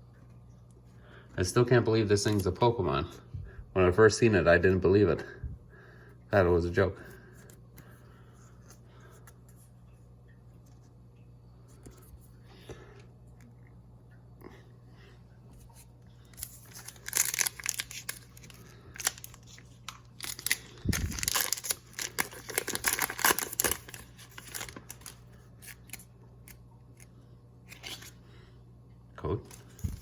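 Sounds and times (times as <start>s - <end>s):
low steady hum: 0.0s - 30.0s
foil wrapper crinkling and tearing: 16.3s - 27.1s, 27.7s - 28.2s.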